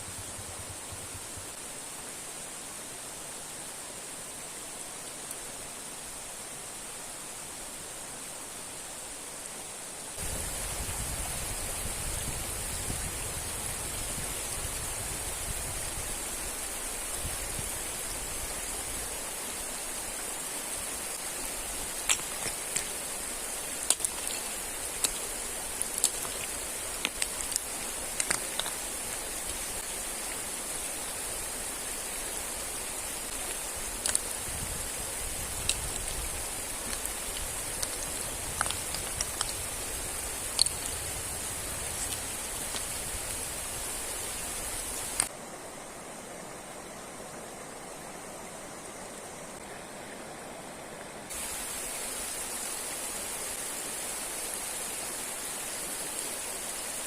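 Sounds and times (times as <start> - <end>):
river and waterfall rushing: 0.0 - 57.0
sharp clicks and snaps: 23.8 - 25.2, 25.8 - 28.8, 33.3 - 34.3, 35.6 - 36.1, 36.8 - 39.6, 40.5 - 40.9.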